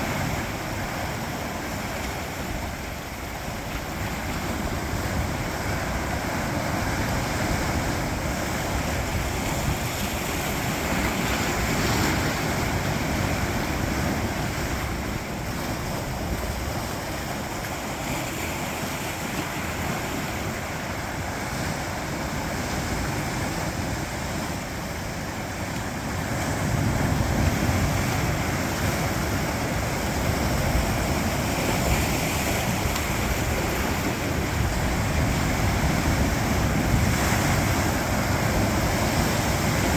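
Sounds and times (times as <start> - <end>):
sea waves breaking on rocks: 0.0 - 39.9.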